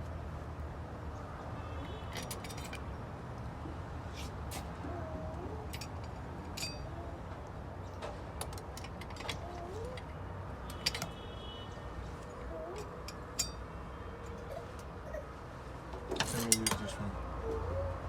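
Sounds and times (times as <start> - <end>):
metal parts clinking: 1.9 - 3.0, 5.7 - 7.0, 8.4 - 11.3, 12.7 - 13.7, 16.1 - 17.0.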